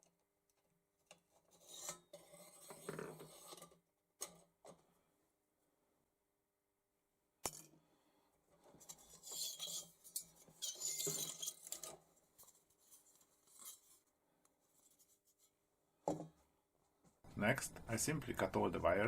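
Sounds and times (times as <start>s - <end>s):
metallic scraping and clinking: 8.8s - 14.0s.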